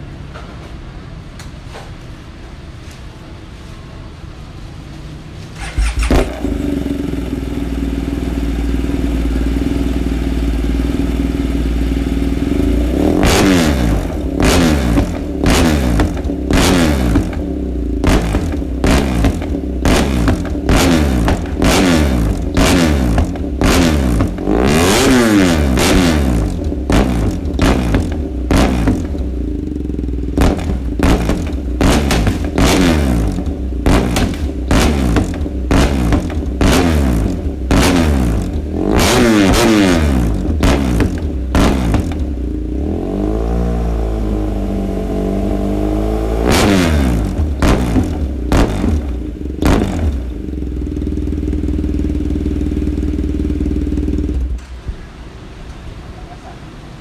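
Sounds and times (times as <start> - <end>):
engine starting and revving: 5.5 - 7.4, 13.1 - 17.4, 18.0 - 29.2, 30.4 - 42.3, 42.9 - 50.3.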